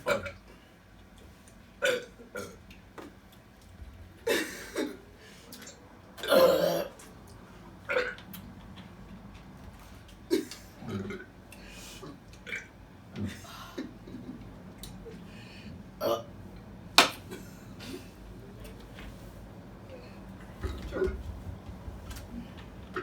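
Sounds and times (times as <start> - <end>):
person burping: 6.2 - 7.0, 10.8 - 11.3.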